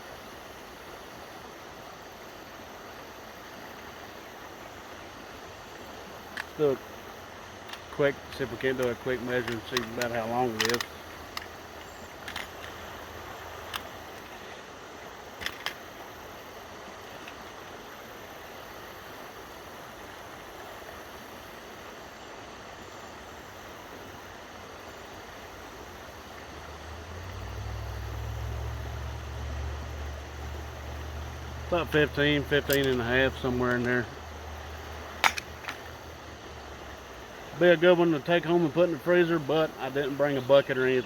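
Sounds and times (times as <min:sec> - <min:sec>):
light clicks: 0:07.7 - 0:12.8, 0:32.0 - 0:33.9.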